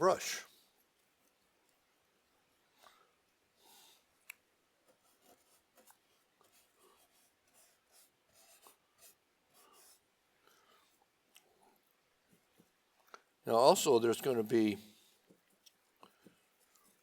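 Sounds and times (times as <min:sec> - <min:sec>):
paintbrush strokes on canvas: 0:04.8 - 0:10.1.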